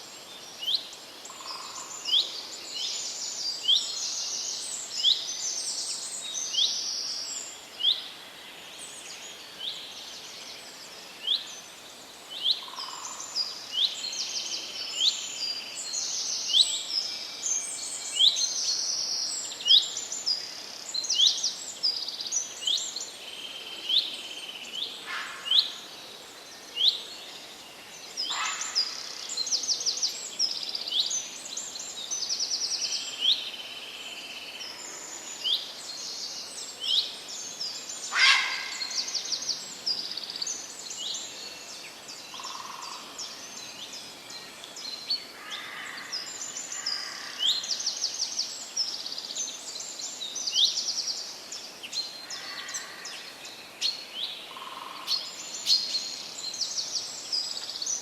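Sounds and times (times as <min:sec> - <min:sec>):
faint background hiss: 0:00.0 - 0:58.0
songbirds chirping and trilling: 0:00.0 - 0:58.0
lower bird calls: 0:38.1 - 0:39.5.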